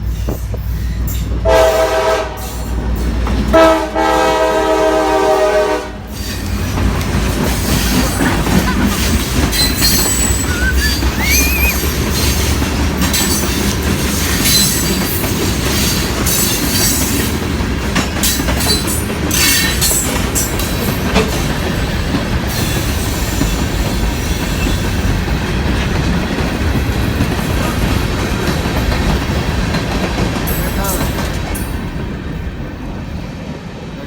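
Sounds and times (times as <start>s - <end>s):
train wheels rumbling on rail: 0.0s - 34.0s.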